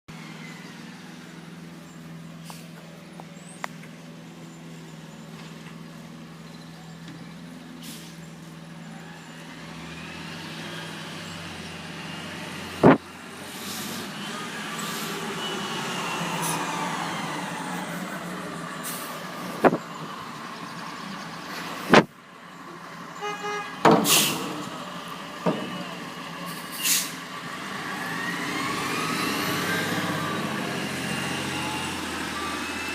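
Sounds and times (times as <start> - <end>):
air brake hisses: 7.8 - 8.2, 24.0 - 24.5, 26.7 - 27.2
garbage truck engine revving: 8.8 - 22.1, 23.8 - 32.9
horn honk: 23.2 - 23.8.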